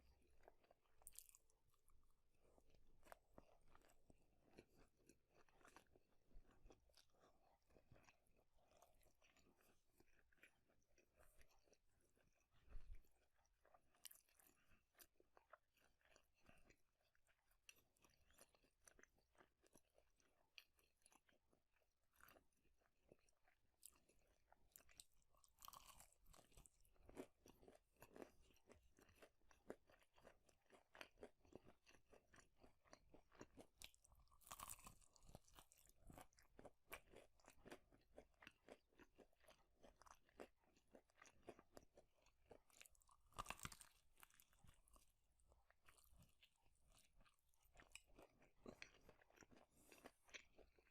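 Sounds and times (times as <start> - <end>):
person chewing crunchy food: 0.0 - 50.9.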